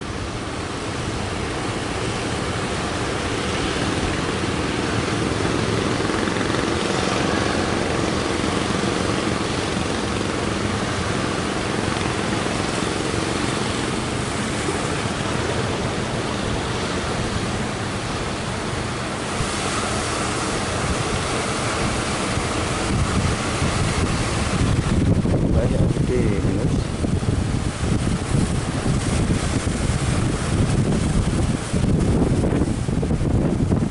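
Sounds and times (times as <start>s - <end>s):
surf breaking: 0.0s - 33.9s
wind blowing on microphone: 0.0s - 33.9s.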